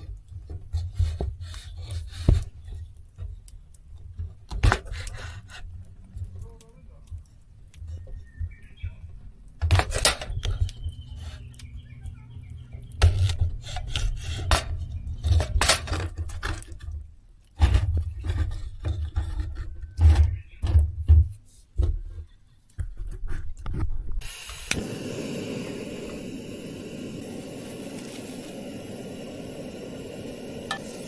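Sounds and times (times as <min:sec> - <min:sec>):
objects knocking and scraping: 0:00.0 - 0:06.5, 0:12.7 - 0:24.2.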